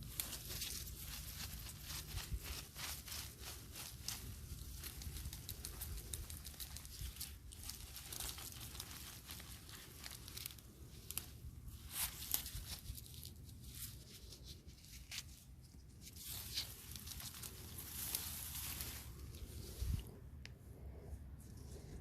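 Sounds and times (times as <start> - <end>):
rustling and scraping: 0.0 - 22.0
crisp ticks: 0.1 - 11.4.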